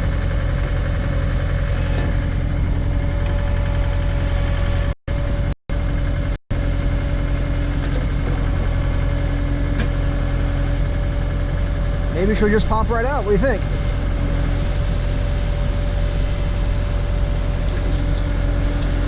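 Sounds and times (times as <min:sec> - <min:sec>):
backhoe engine running: 0:00.0 - 0:19.0.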